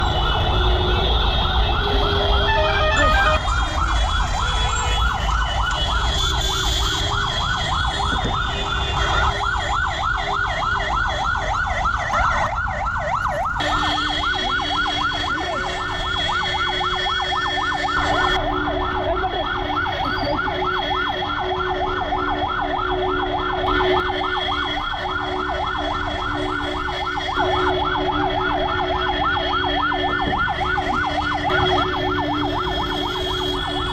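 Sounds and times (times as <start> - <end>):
ambulance siren yelping: 0.0 - 33.9
road traffic rumble: 0.0 - 33.9.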